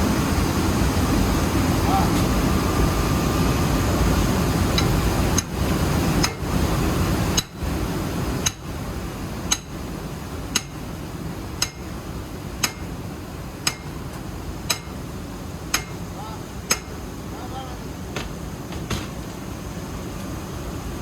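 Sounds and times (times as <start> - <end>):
machine hum: 0.0 - 21.0.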